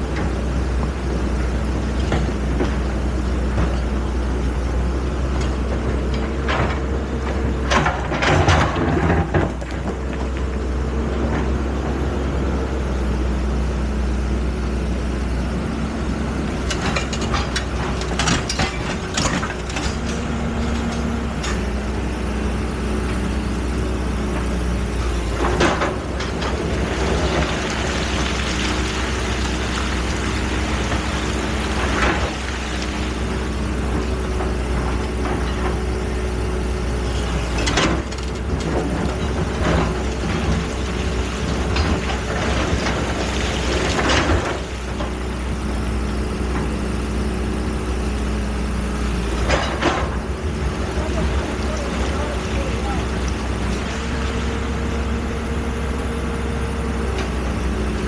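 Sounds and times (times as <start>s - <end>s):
excavator diesel engine: 0.0s - 58.0s
metallic clanks and knocks: 16.7s - 21.7s.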